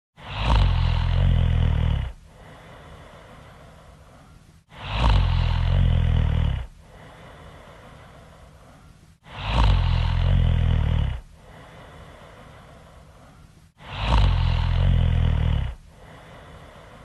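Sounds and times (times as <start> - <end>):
woman snoring loudly: 0.2 - 2.7, 4.7 - 7.2, 9.2 - 12.2, 13.8 - 17.0.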